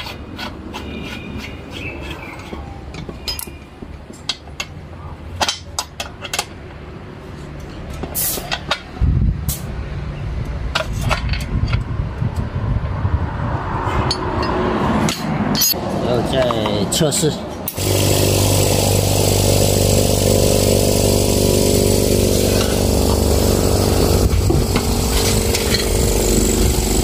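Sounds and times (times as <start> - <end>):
air compressor droning: 17.7 - 27.0.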